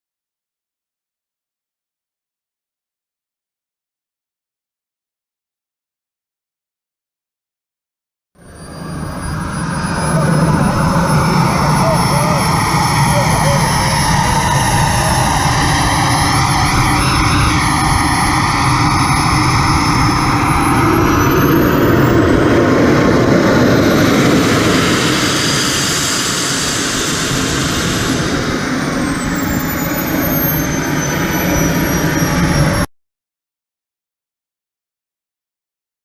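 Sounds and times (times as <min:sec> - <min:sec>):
jet turbine engine roar and whine: 0:08.4 - 0:32.9.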